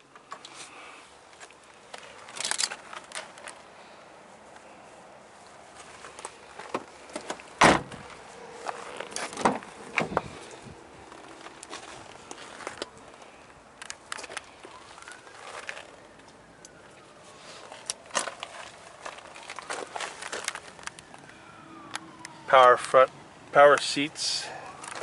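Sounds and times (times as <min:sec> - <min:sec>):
loud thump: 0:07.6 - 0:08.0.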